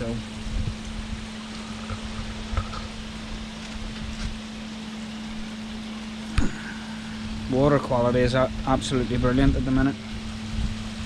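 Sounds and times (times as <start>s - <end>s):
constant hiss: 0.0s - 11.0s
steady low hum: 0.0s - 11.0s
wind buffeting microphone: 0.3s - 4.4s, 8.5s - 11.0s.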